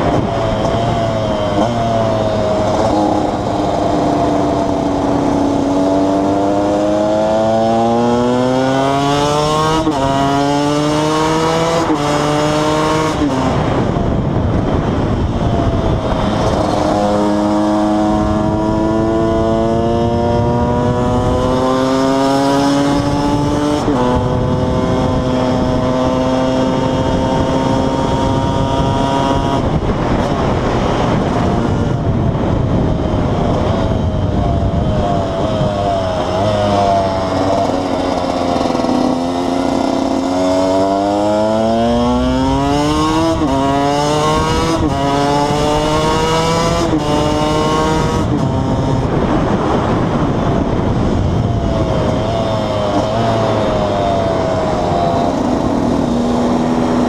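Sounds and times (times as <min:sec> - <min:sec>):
two-stroke engine revving: 0:34.6 - 0:57.0.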